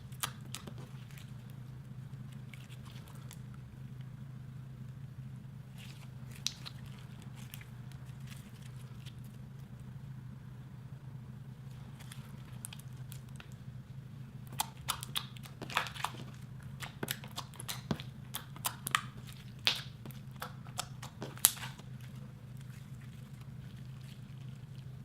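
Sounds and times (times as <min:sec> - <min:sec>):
slime squishing with sticky pops: 0:00.0 - 0:04.1, 0:05.8 - 0:09.4, 0:14.4 - 0:25.0
steady low hum: 0:00.0 - 0:25.0.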